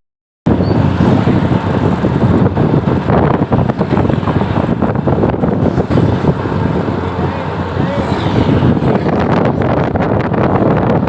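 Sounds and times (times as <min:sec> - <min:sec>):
roadside traffic noise: 0:00.5 - 0:11.0
wind buffeting microphone: 0:00.5 - 0:11.0.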